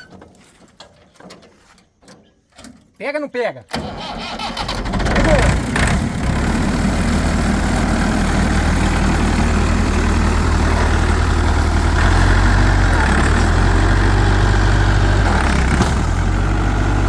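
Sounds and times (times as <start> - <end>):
tractor engine idling: 3.7 - 17.0.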